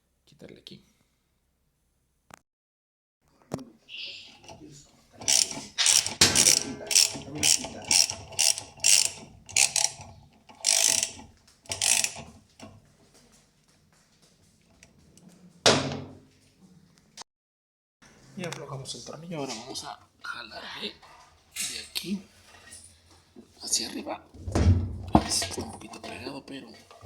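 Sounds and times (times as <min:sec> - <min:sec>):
socket wrench ratcheting: 0:05.2 - 0:12.3.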